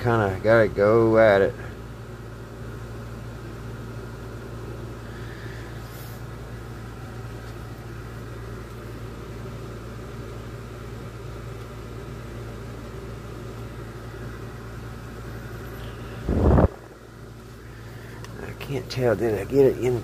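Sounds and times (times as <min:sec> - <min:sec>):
motor humming: 0:04.6 - 0:20.0.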